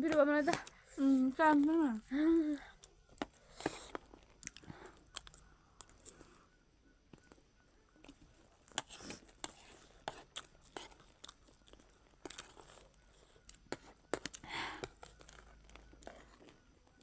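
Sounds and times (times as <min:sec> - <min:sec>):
crunchy snack chewing: 0:02.6 - 0:17.0
short breath: 0:14.4 - 0:14.8.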